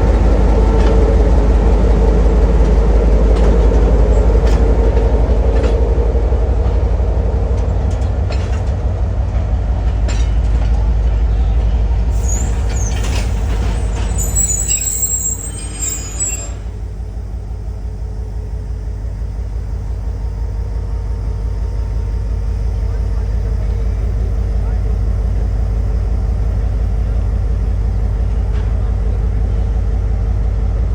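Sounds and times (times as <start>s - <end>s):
train running with low rumble: 0.0s - 30.9s
high-pitched metallic squealing: 12.2s - 20.2s.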